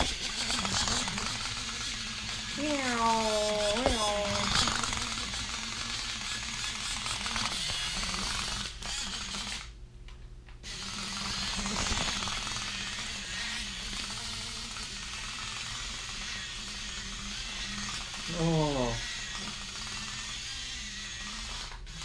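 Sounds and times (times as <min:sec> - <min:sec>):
small propeller motors whirring: 0:00.0 - 0:09.8, 0:10.6 - 0:22.0.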